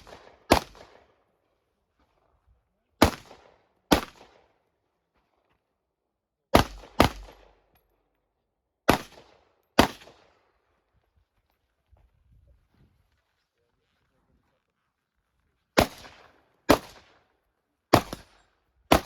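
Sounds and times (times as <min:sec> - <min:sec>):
rifle shots with echo: 0:00.0 - 0:01.2, 0:03.0 - 0:04.6, 0:06.5 - 0:07.7, 0:08.9 - 0:10.5, 0:15.8 - 0:17.3, 0:17.9 - 0:19.0.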